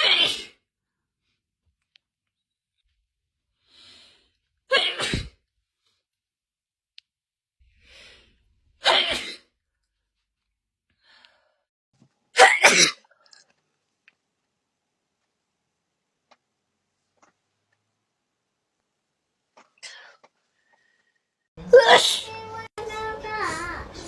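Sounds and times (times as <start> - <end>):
person sneezing: 0.0 - 0.6, 4.7 - 5.4, 8.8 - 9.5, 12.4 - 13.1, 21.7 - 22.3.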